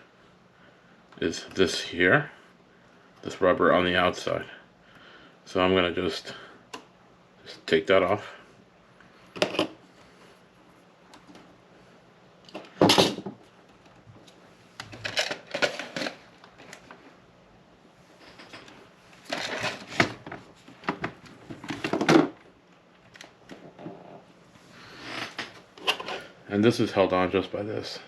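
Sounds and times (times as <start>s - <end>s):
clicking and rattling of small parts: 14.8s - 17.0s.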